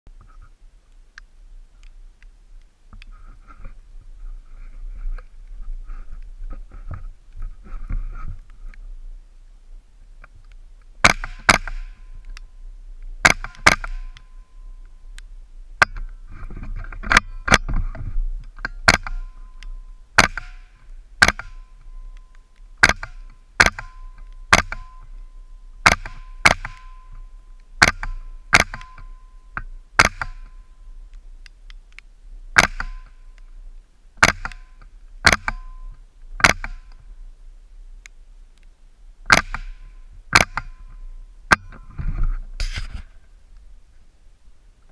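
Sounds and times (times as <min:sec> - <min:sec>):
rifle shots: 0:11.0 - 0:12.0, 0:13.2 - 0:14.1, 0:18.8 - 0:19.3, 0:20.2 - 0:21.7, 0:22.8 - 0:25.0, 0:25.8 - 0:27.0, 0:27.8 - 0:29.1, 0:30.0 - 0:30.4, 0:32.6 - 0:33.1, 0:34.2 - 0:35.7, 0:39.3 - 0:40.8.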